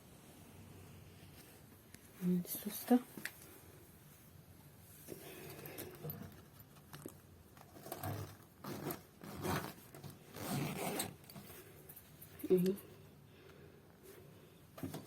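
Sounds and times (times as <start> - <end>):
zipper scraping pulls: 7.6 - 11.7.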